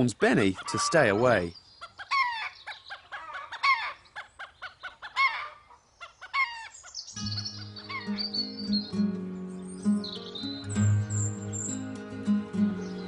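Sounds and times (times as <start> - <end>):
cockerel warning calls: 0.0 - 5.4, 7.2 - 9.0
soft music: 7.2 - 13.0.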